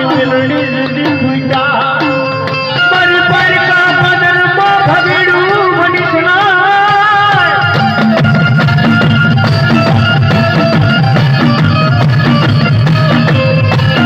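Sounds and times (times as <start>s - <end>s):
drums keeping a steady beat: 0.0s - 14.0s
held melody notes: 7.3s - 14.0s.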